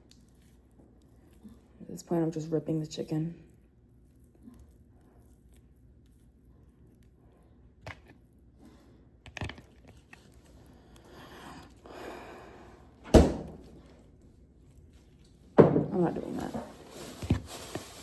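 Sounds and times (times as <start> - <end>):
loud thunk: 13.1 - 13.6
rustling and scraping: 13.5 - 18.0.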